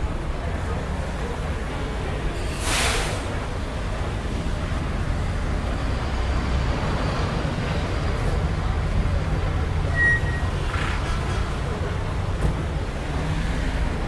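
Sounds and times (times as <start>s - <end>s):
road traffic rumble: 0.0s - 14.0s
short high-pitched beep: 9.9s - 10.5s.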